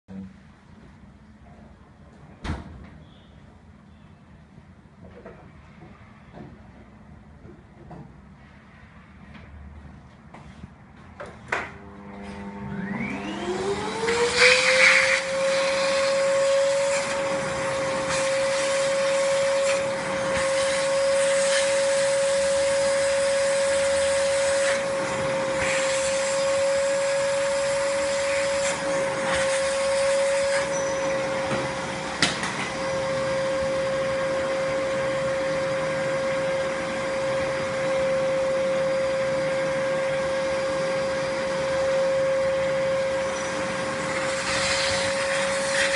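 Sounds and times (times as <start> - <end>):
vacuum cleaner motor whine: 11.5 - 45.9.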